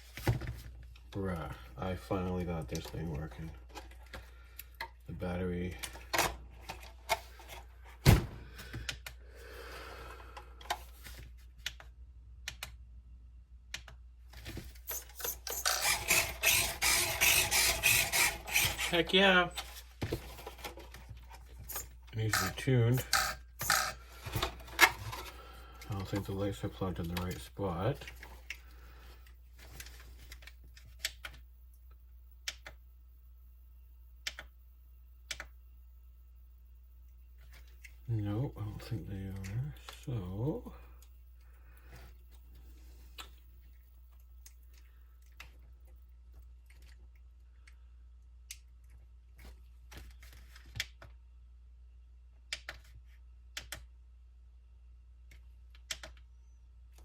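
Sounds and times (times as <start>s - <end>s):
steady low hum: 0.0s - 57.0s
thump: 8.0s - 8.4s.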